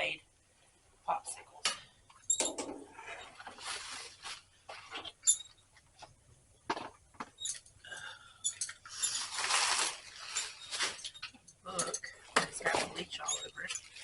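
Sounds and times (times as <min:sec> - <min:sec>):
objects clinking and knocking: 0:02.3 - 0:02.9, 0:08.4 - 0:09.3
rustling in a dumpster: 0:08.9 - 0:11.4.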